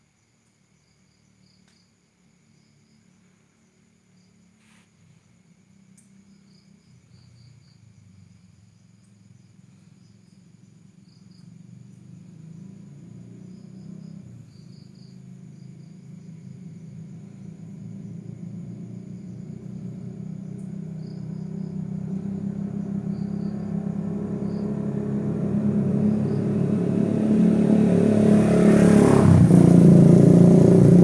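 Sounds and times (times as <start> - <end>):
crickets chirping: 0.0 - 31.0
motor vehicle hum: 12.0 - 31.0.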